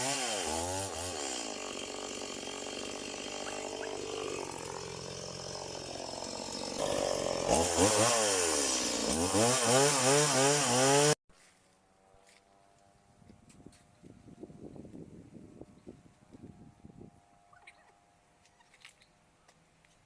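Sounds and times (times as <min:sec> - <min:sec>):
chainsaw running: 0:00.0 - 0:11.2.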